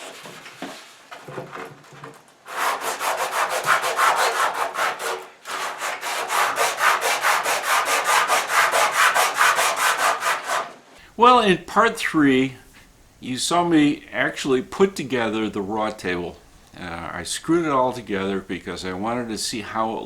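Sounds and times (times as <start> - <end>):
sandpaper scratching wood: 2.4 - 10.8.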